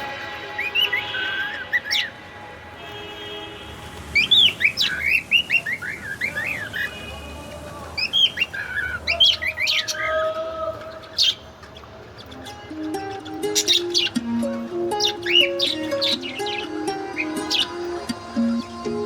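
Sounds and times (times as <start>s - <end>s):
budgerigars chirping: 0.7s - 2.1s, 4.2s - 7.0s, 8.0s - 10.1s, 10.9s - 18.6s.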